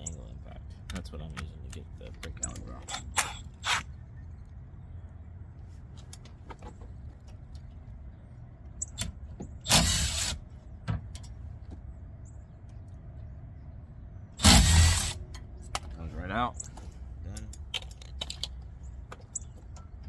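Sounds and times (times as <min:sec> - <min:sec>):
impact wrench running: 0:14.4 - 0:15.2.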